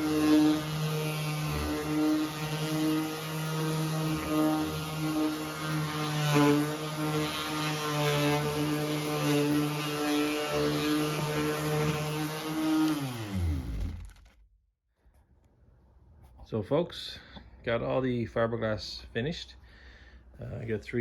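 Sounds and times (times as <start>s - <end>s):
power tool motor humming: 0.0s - 14.4s.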